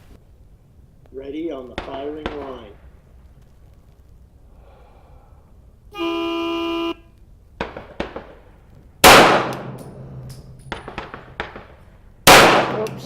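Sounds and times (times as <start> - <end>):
faint sharp cracks: 1.0 - 4.4, 7.1 - 13.0
loud pistol shot: 7.6 - 13.0.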